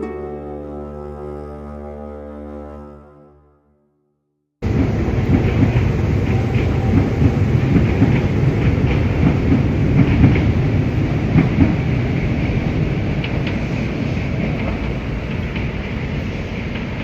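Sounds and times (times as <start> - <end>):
train wheels rumbling on rails: 4.6 - 17.0
sharp rail clicks: 4.7 - 17.0.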